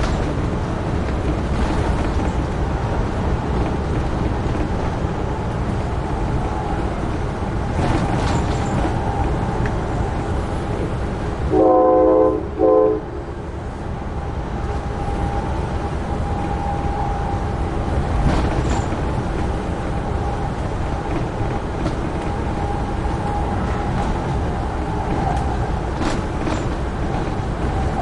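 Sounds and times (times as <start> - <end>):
train rumbling on rails: 0.0 - 28.0
train horn blasts: 11.5 - 13.4.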